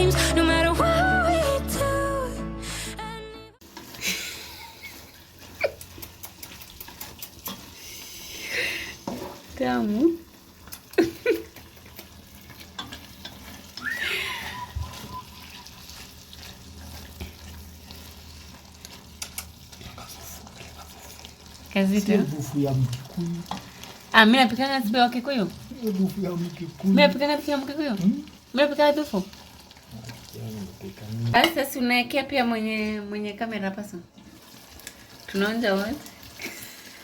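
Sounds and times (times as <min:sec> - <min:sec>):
steak sizzling in a pan: 0:03.6 - 0:37.0
utensil clicking against pan: 0:05.6 - 0:07.7, 0:10.6 - 0:13.8, 0:19.1 - 0:19.6.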